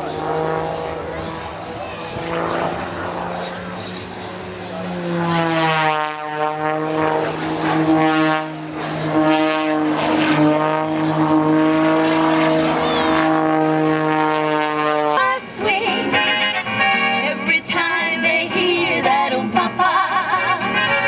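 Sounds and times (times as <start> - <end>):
propeller aircraft engine droning: 0.0 - 21.0
music: 15.2 - 21.0.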